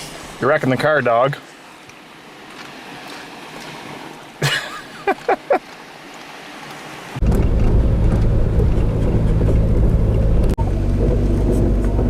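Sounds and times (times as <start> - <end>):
car engine rumbling: 7.2 - 12.0.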